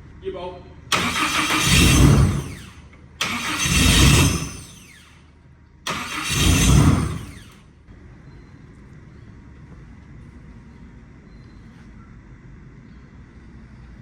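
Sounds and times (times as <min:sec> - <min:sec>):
car engine revving and idling: 0:00.9 - 0:05.2, 0:05.9 - 0:07.6.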